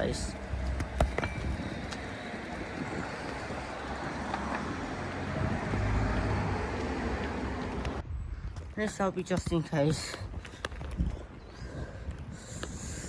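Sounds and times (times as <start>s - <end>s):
road traffic rumble: 0.0s - 8.0s.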